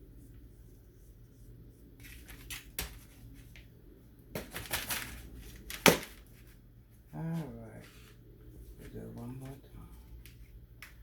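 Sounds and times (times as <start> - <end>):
parchment paper crinkling: 4.3 - 6.6.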